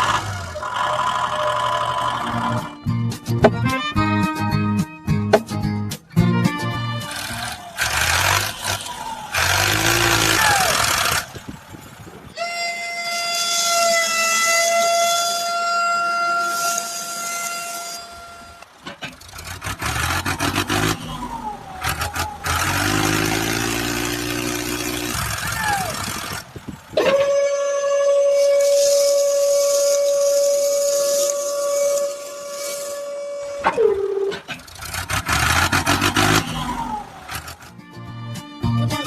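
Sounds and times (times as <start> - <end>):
engine noise: 0.0 - 39.0
horn held: 12.2 - 39.0.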